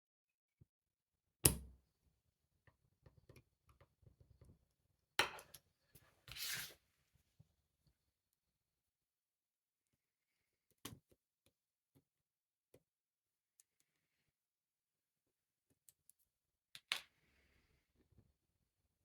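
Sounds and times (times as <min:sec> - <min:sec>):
brief metal scrape: 0:06.3 - 0:06.8.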